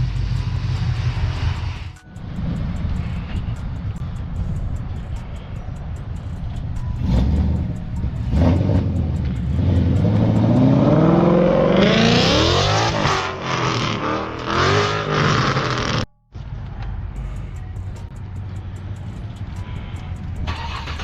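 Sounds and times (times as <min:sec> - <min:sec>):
car engine revving: 0:00.0 - 0:03.6, 0:07.0 - 0:16.1.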